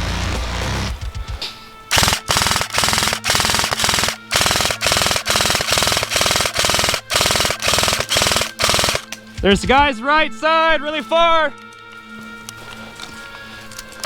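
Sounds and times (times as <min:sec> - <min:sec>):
airsoft gun firing bursts: 0:01.9 - 0:09.1.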